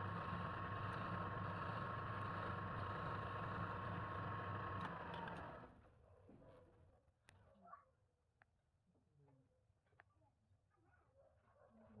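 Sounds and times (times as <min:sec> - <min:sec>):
lathe motor whining and humming: 0:00.0 - 0:05.6.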